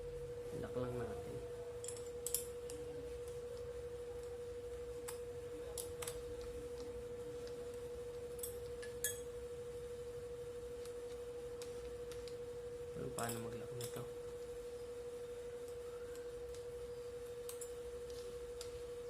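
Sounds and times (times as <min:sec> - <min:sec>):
steady high-pitched hum: 0:00.0 - 0:19.0
metallic clicks and clinks: 0:01.8 - 0:02.8, 0:13.2 - 0:14.1.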